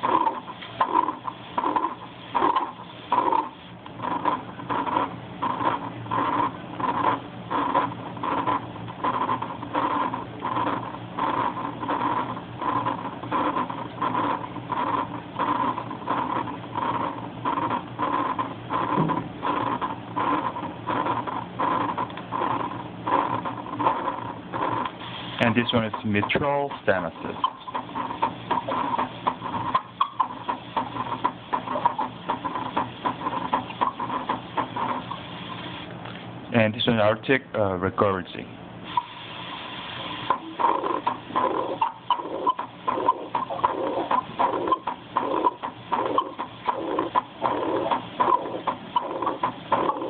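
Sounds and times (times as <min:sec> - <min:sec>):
heart murmur through a speaker: 0:00.0 - 0:24.9, 0:40.3 - 0:50.0
steady low hum: 0:00.0 - 0:50.0.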